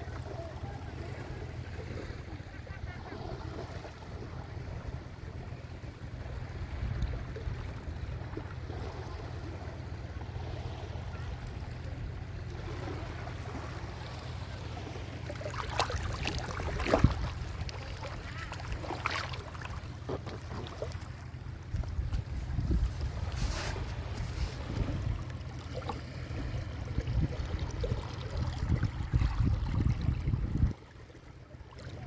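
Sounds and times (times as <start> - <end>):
wind rumble on microphone: 0.0 - 15.0, 16.0 - 18.4, 20.1 - 31.1
small waves washing ashore: 0.0 - 32.0
water splashing: 10.4 - 32.0.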